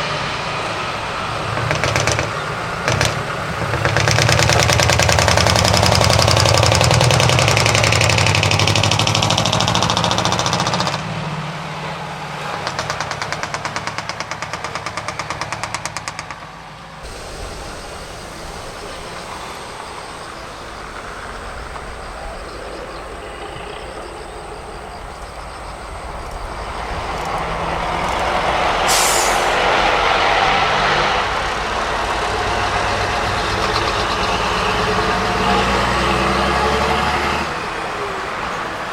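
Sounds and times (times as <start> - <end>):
diesel trucks driving past: 0.0 - 38.9
air brakes hissing: 12.5 - 31.7.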